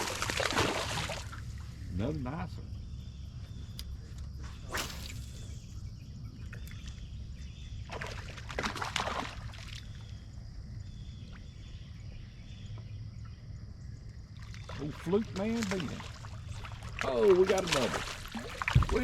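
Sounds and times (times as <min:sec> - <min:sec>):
fish splashing at the surface: 0:00.0 - 0:01.5, 0:07.9 - 0:09.9, 0:14.4 - 0:19.0
steady low rumble: 0:01.3 - 0:04.4.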